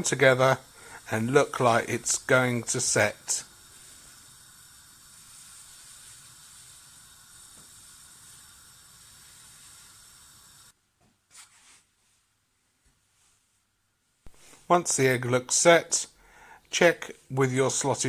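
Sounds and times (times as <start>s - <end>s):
boiling water hissing: 0.0s - 10.8s.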